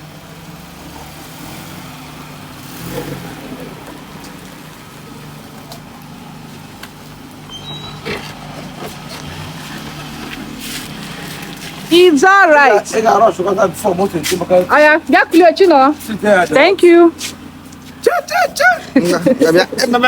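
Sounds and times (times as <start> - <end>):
car engine running: 0.0 - 20.0
high beeps: 7.5 - 8.3.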